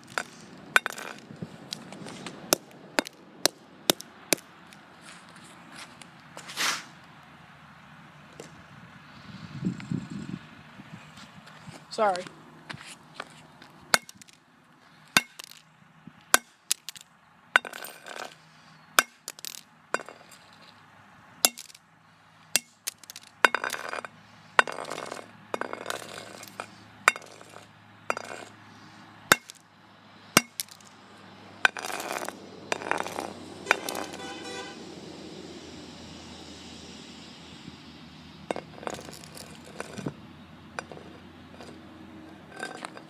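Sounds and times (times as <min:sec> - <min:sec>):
scraping and crackling: 0:00.0 - 0:07.1, 0:15.1 - 0:15.7, 0:16.3 - 0:20.8, 0:21.4 - 0:21.8, 0:22.5 - 0:29.6, 0:30.4 - 0:31.0, 0:31.6 - 0:34.4, 0:38.5 - 0:40.2, 0:40.8 - 0:43.0.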